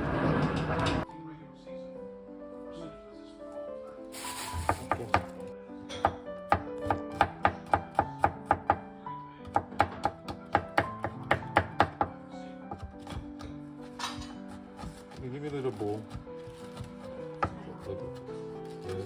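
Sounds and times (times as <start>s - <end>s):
background music: 1.0s - 19.0s
knife chopping on cutting board: 4.6s - 5.4s, 6.0s - 8.8s, 9.4s - 19.0s.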